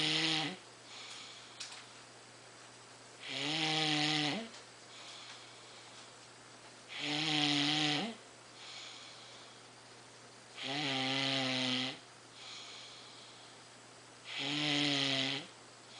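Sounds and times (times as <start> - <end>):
person snoring: 0.0 - 0.6, 3.2 - 4.5, 6.9 - 9.4, 10.6 - 13.4, 14.3 - 15.5
soft breathing: 0.8 - 2.2, 4.4 - 6.4, 8.5 - 9.9, 12.3 - 13.9.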